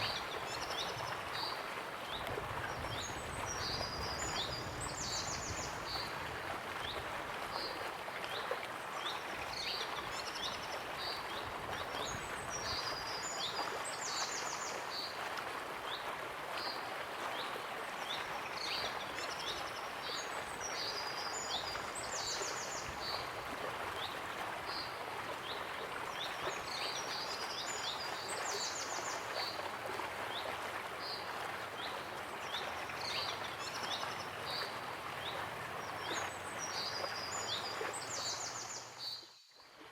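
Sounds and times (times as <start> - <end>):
songbirds chirping and trilling: 33.0 - 39.4.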